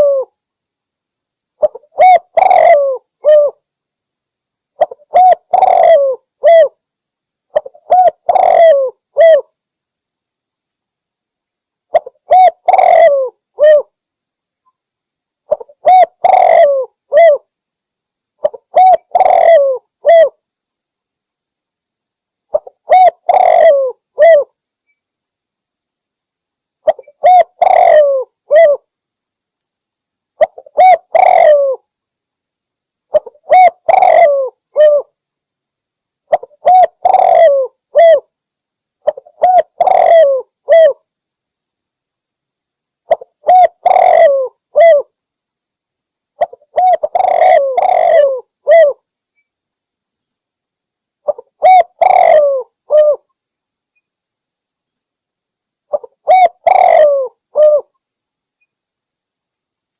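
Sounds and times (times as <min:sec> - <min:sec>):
dove cooing: 0:00.0 - 0:00.4, 0:01.6 - 0:03.6, 0:04.8 - 0:06.8, 0:07.5 - 0:09.5, 0:11.9 - 0:13.9, 0:15.5 - 0:17.5, 0:18.4 - 0:20.4, 0:22.5 - 0:24.5, 0:26.8 - 0:28.8, 0:30.4 - 0:31.8, 0:33.1 - 0:35.1, 0:36.3 - 0:38.3, 0:39.0 - 0:41.0, 0:43.1 - 0:45.1, 0:46.4 - 0:49.0, 0:51.3 - 0:53.2, 0:55.9 - 0:57.9.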